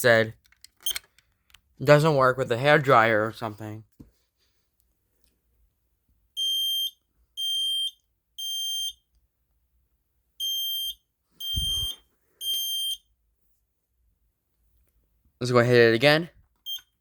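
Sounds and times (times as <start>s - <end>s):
smoke alarm beeping: 6.4s - 9.1s, 10.4s - 13.1s, 16.6s - 17.0s.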